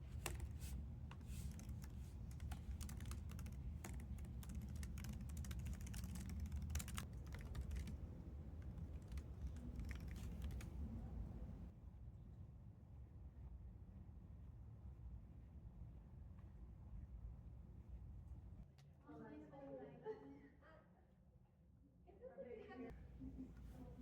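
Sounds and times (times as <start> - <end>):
low steady hum: 0.0 - 11.7.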